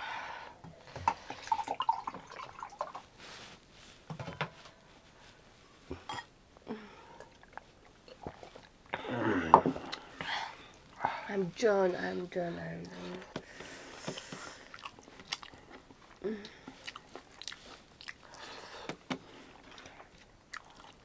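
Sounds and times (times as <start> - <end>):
person chewing food: 7.0 - 11.1, 13.1 - 21.0.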